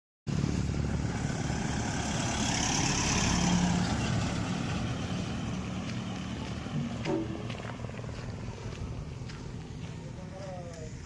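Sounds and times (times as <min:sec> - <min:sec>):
engine running steadily: 0:00.3 - 0:11.0.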